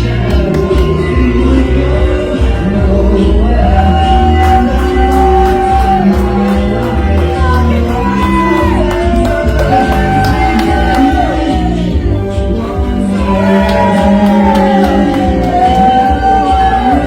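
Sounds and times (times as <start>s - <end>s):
song with singing over a beat: 0.0s - 17.0s
crowd shouting: 3.1s - 12.0s, 12.8s - 17.0s.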